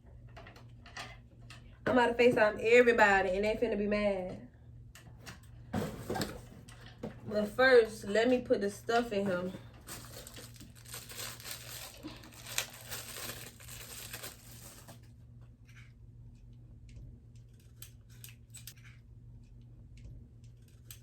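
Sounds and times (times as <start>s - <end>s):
packaging rustling and crinkling: 9.4s - 15.1s.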